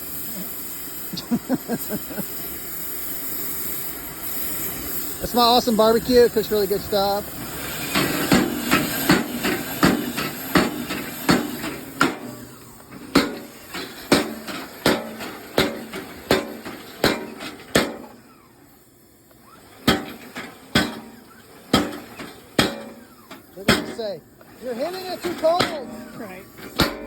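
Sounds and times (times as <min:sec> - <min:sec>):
power hammer striking metal: 0:05.3 - 0:18.5, 0:19.7 - 0:24.2, 0:24.8 - 0:27.0.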